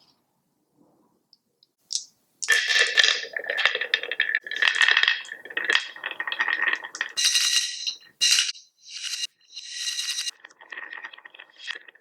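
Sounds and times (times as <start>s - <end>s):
marbles rattling down track: 2.4s - 12.0s.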